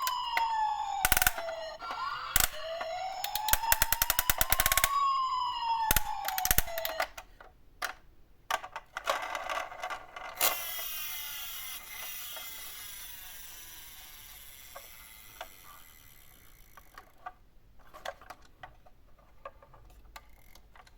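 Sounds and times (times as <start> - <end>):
whirring: 0.0 - 7.1, 10.4 - 17.2
toy electronic siren: 0.0 - 7.2, 10.4 - 17.1
small plastic clicks and knocks: 2.4 - 5.0, 5.8 - 10.6, 16.8 - 20.9.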